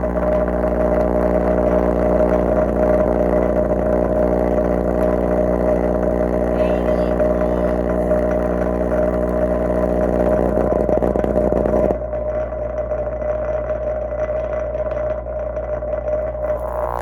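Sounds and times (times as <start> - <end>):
overdriven subwoofer distorted hum: 0.0 - 17.0.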